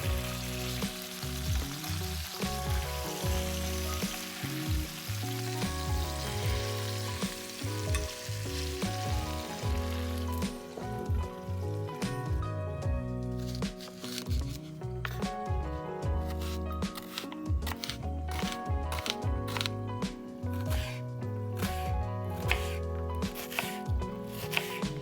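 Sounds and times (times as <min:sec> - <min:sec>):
food sizzling in a pan: 0:00.0 - 0:11.8.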